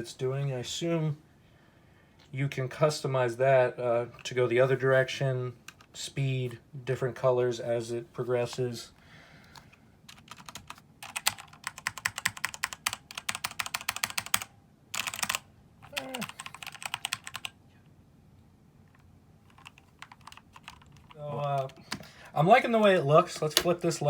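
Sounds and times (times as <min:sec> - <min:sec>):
rapid mechanical keyboard typing: 0:10.1 - 0:17.6, 0:18.9 - 0:22.1.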